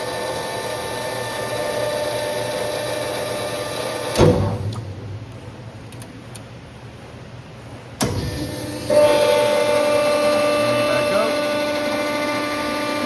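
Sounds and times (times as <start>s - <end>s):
electric pump motor whine: 0.0s - 4.4s, 8.0s - 13.0s
baler machine clunk: 4.1s - 5.3s.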